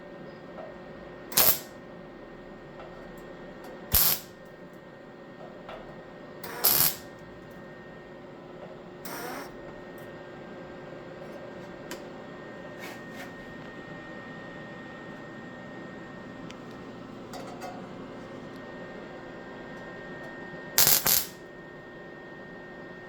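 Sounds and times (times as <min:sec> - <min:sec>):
workshop hum: 0:00.0 - 0:23.0
welder tack weld bursts: 0:01.3 - 0:01.7, 0:03.9 - 0:04.3, 0:06.4 - 0:07.1, 0:09.1 - 0:09.5, 0:20.8 - 0:21.4.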